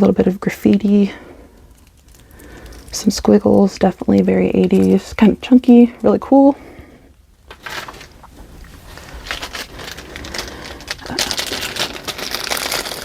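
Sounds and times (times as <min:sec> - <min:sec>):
packaging rustling and crinkling: 0:07.2 - 0:13.0.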